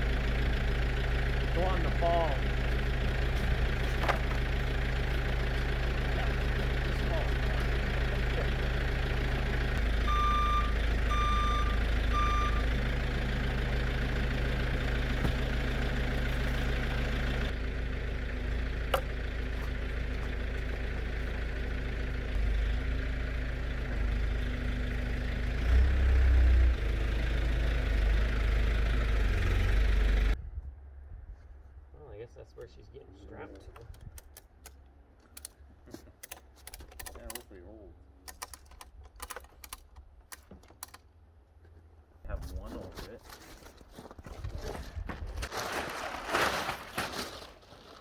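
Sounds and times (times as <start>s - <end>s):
vehicle engine idling: 0.0s - 30.4s
reversing alarm beeps: 10.1s - 12.7s.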